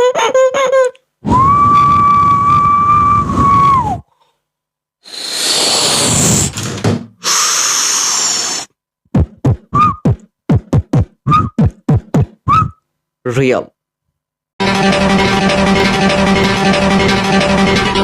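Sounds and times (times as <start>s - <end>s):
beatbox hissing noises: 5.0s - 6.5s, 7.2s - 12.7s
beatbox kick drum mouth hits: 9.1s - 12.8s.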